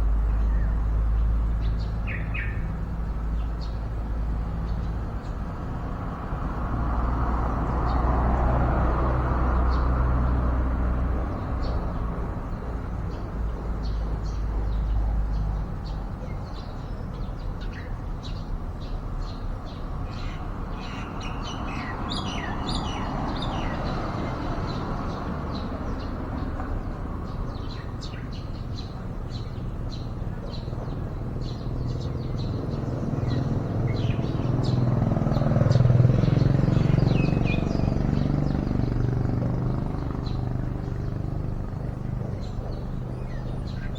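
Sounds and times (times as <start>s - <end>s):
small birds chirping: 0.0s - 6.2s, 7.0s - 43.9s.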